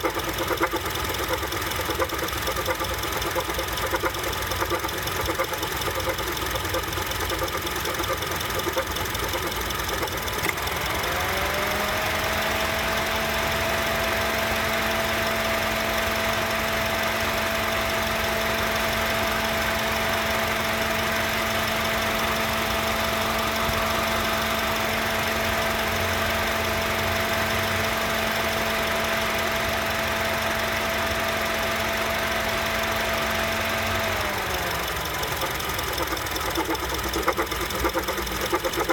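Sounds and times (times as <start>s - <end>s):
engine clunking: 0.0s - 11.9s, 32.6s - 38.9s
car engine idling: 0.0s - 38.9s.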